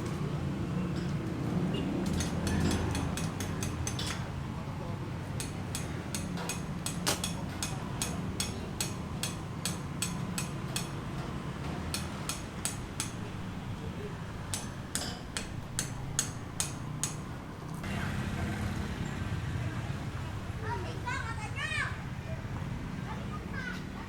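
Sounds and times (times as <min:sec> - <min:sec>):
low background murmur: 0:00.0 - 0:24.0
sharp hammer strikes: 0:05.4 - 0:11.0, 0:11.9 - 0:13.3, 0:14.4 - 0:17.3.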